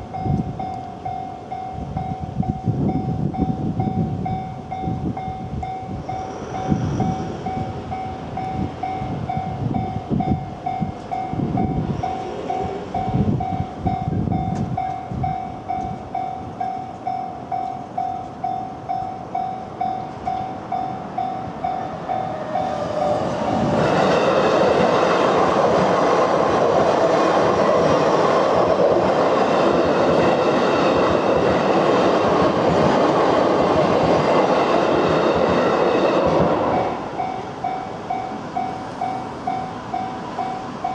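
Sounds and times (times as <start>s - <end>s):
level crossing warning bell: 0.0s - 23.3s, 36.8s - 40.9s
electric train passing: 0.0s - 40.9s.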